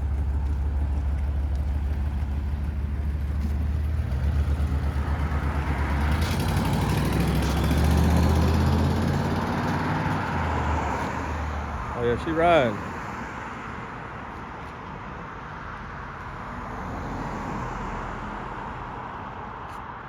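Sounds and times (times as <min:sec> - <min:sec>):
car engine rumbling: 0:00.0 - 0:13.1.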